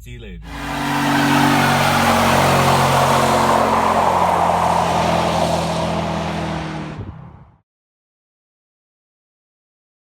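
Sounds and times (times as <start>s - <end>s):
car engine at high revs: 0.5s - 7.5s.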